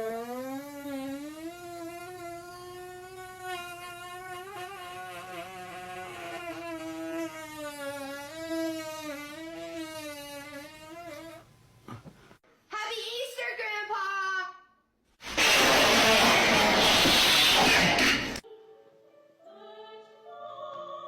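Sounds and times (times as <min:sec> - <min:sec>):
buzzing fart sound: 0:00.0 - 0:12.2, 0:15.2 - 0:18.4.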